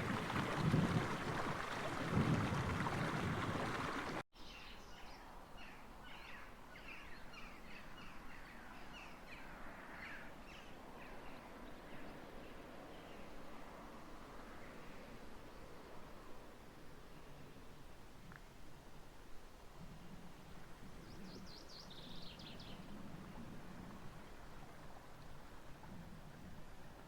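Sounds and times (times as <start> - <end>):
songbird chirping: 2.8 - 13.3, 20.9 - 23.0.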